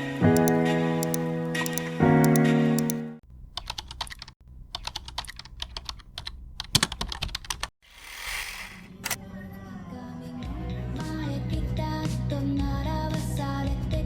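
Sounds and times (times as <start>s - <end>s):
keyboard typing: 0.3s - 7.7s.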